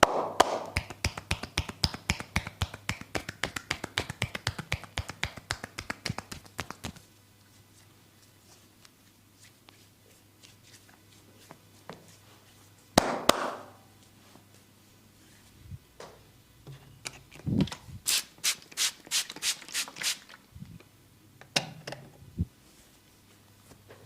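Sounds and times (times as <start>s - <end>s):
sharp snaps of massage cracking: 0.0s - 7.1s.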